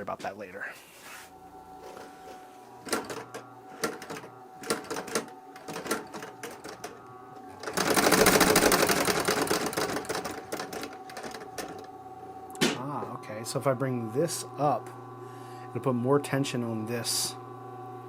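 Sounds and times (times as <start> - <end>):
sewing machine motor humming: 1.8 - 13.1
sewing machine clicks and clunks: 7.6 - 11.8
sewing machine stitching rattle: 7.6 - 11.8.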